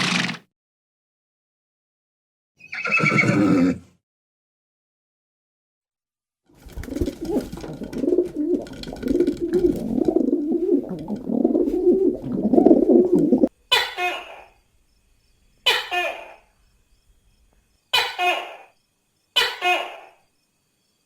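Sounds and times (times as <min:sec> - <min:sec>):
pigeons cooing: 0:06.6 - 0:13.5.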